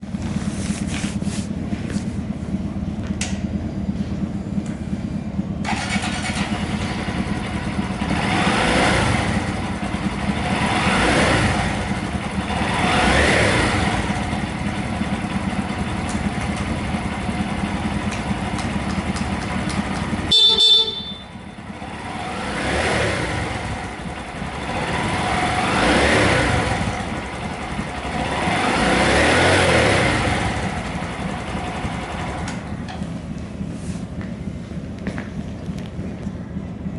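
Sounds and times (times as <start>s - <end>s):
motorcycle engine idling: 0.0s - 13.0s, 13.6s - 36.9s
traffic passing: 0.0s - 36.9s
horn beep: 20.1s - 21.6s.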